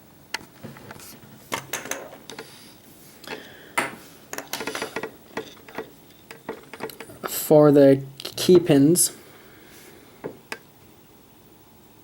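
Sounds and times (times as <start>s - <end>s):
small metal parts clicking: 4.3s - 7.3s.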